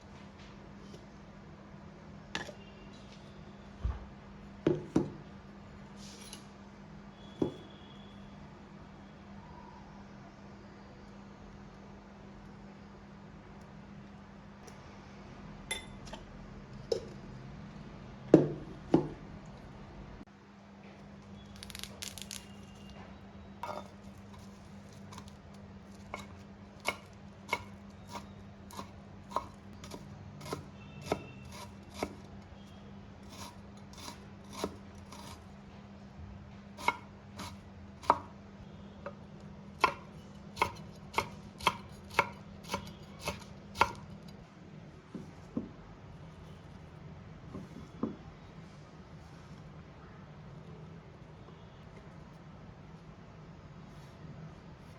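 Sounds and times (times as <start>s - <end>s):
knife chopping on cutting board: 26.0s - 32.2s, 33.3s - 35.4s, 36.8s - 38.3s, 39.8s - 44.1s.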